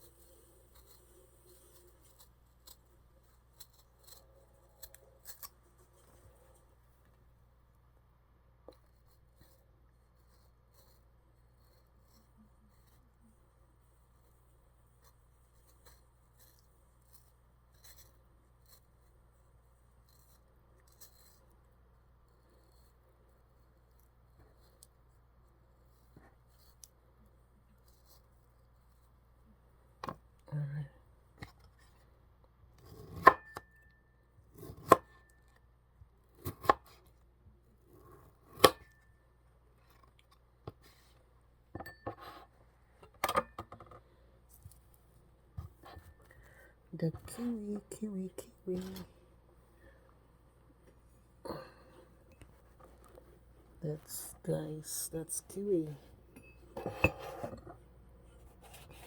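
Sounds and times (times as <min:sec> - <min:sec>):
fruit peeling scrapes: 0:00.0 - 0:06.8
low steady hum: 0:00.0 - 0:59.0
knife chopping fruit: 0:32.8 - 0:33.8, 0:34.6 - 0:35.2.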